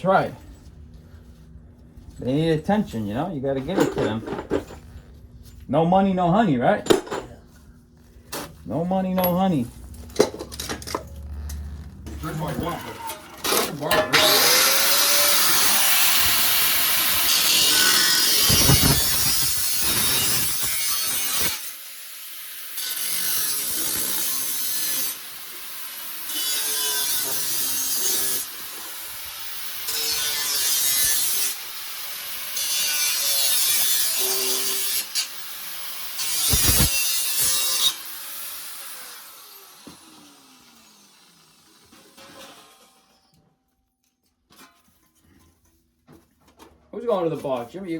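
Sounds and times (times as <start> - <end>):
rasping tool scraping: 36.3 - 37.9.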